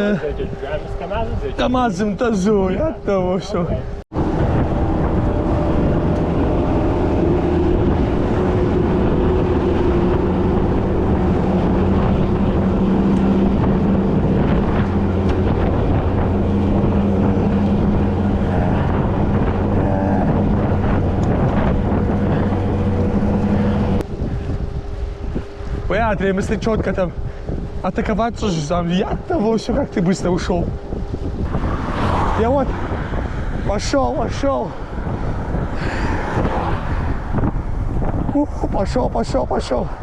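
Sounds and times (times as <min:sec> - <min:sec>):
vehicle engine humming: 0:00.0 - 0:38.7
wind buffeting microphone: 0:00.0 - 0:40.0.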